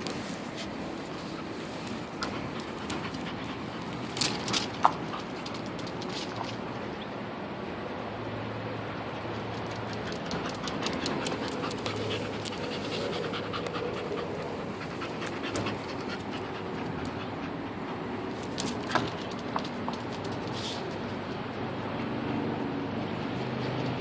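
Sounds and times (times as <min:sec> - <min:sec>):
dog panting: 0:01.1 - 0:05.8, 0:09.7 - 0:18.4.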